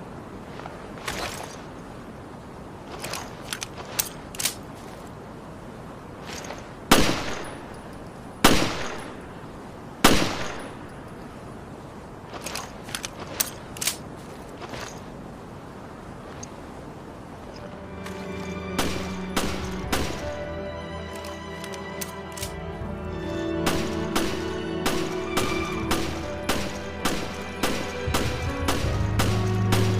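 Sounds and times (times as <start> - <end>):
metallic clicks of pistol handling: 3.4 - 4.6, 12.4 - 14.0, 21.1 - 22.6.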